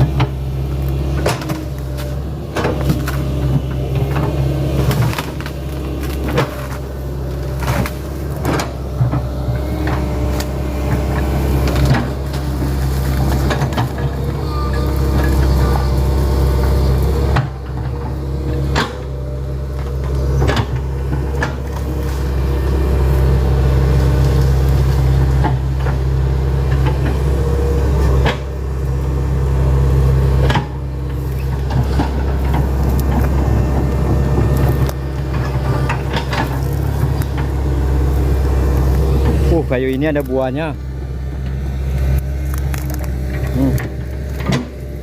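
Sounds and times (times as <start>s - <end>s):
excavator diesel engine running: 0.0s - 45.0s
wood knocking and cracking: 30.4s - 39.5s, 41.4s - 45.0s.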